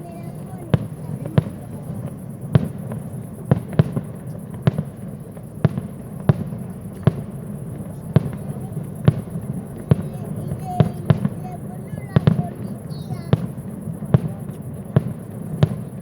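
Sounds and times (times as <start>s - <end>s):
fireworks bangs: 0.0s - 16.0s.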